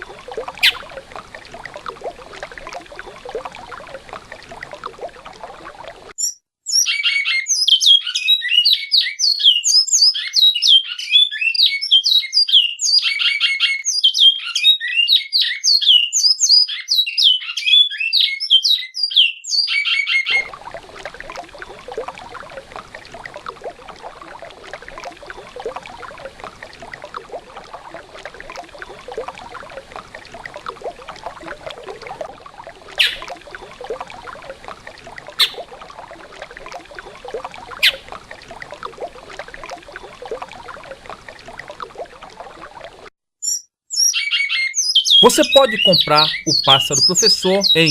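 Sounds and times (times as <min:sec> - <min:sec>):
running river water: 0:00.0 - 0:06.2, 0:20.3 - 0:43.1, 0:45.2 - 0:47.9
finch singing fluting whistles: 0:00.6 - 0:00.8, 0:33.0 - 0:33.3, 0:35.4 - 0:35.6, 0:37.8 - 0:38.0
sharp bird chirp: 0:00.6 - 0:00.8, 0:33.0 - 0:33.3, 0:35.4 - 0:35.6, 0:37.8 - 0:38.1, 0:43.4 - 0:47.9.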